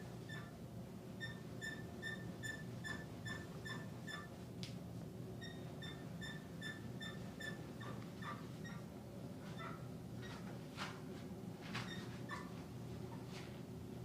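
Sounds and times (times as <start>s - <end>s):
short high squeaks: 1.2s - 4.3s.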